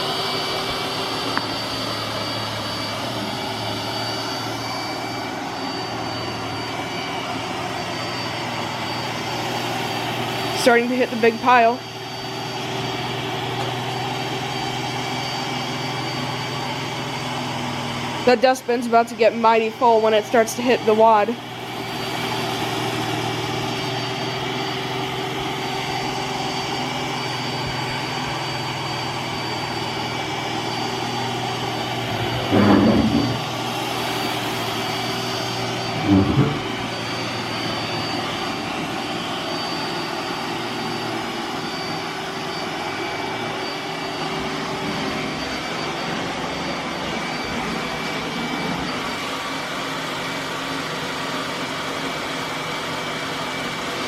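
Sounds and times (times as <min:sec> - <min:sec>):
robot vacuum motor hum: 0:00.0 - 0:51.1.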